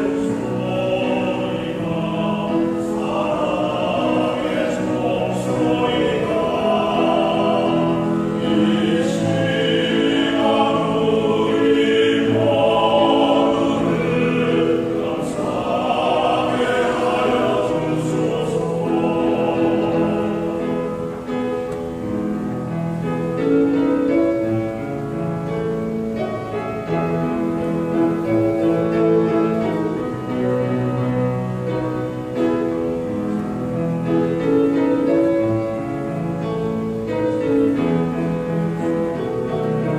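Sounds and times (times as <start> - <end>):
choir singing a hymn in harmony: 0.0 - 39.9.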